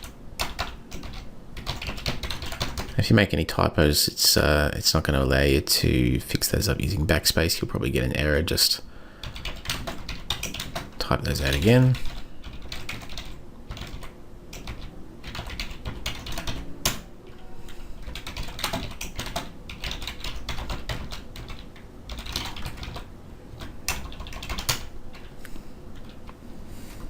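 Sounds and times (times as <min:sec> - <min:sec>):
computer keyboard typing: 0:00.0 - 0:03.0, 0:09.2 - 0:25.3.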